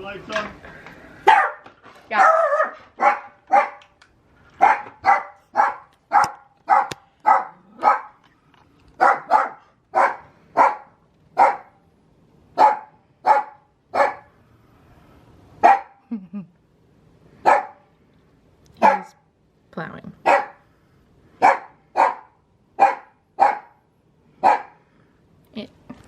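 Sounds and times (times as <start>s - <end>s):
dog barking: 1.2s - 3.9s, 4.6s - 8.2s, 9.0s - 11.8s, 12.6s - 14.3s, 15.6s - 16.0s, 17.4s - 17.9s, 18.8s - 19.2s, 20.2s - 20.6s, 21.4s - 23.8s, 24.4s - 24.8s.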